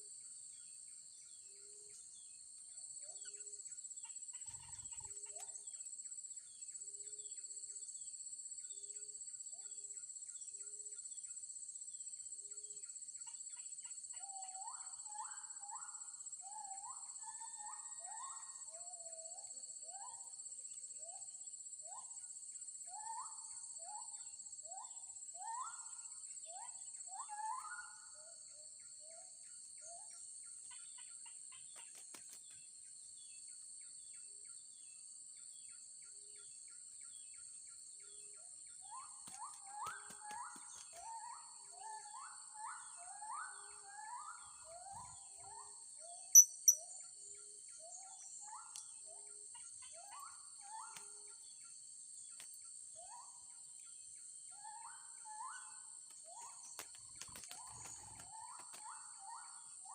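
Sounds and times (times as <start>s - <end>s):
rising whistled bird notes: 42.2s - 46.9s.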